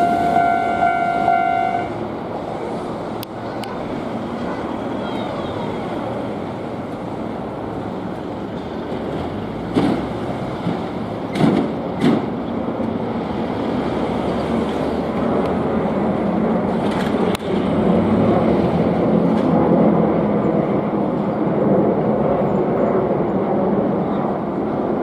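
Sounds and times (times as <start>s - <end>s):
train wheels rumbling on rails: 0.0s - 24.9s.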